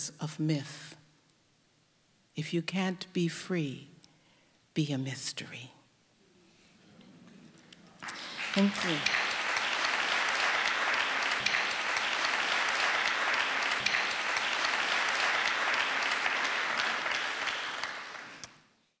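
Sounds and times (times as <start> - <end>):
audience applauding: 8.0 - 18.7.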